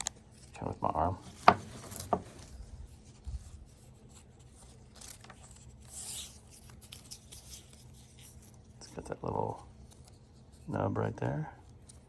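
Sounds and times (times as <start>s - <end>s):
fabric rubbing and rustling: 0.3s - 8.4s.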